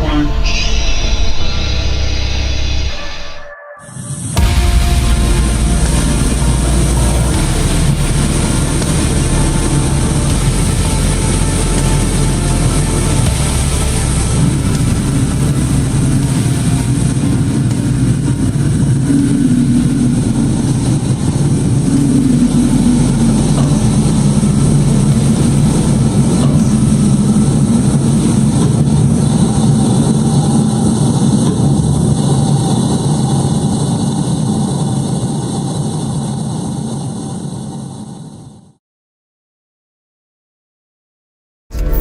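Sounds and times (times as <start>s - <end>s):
rocket engine roaring: 0.0s - 38.7s
low hum: 0.0s - 38.8s.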